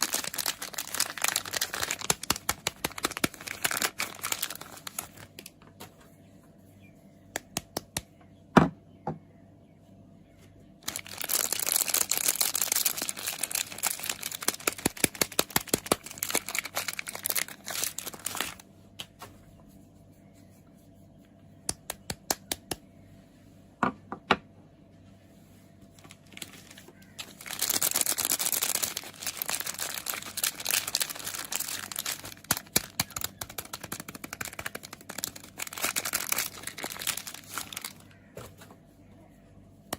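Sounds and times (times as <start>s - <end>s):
packaging crinkling and tearing: 0.0s - 5.7s, 10.8s - 18.6s, 26.0s - 38.3s.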